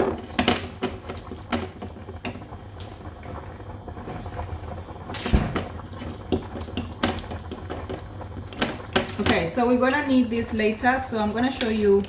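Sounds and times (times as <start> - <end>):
utensils and dishes clattering: 8.4 - 12.0.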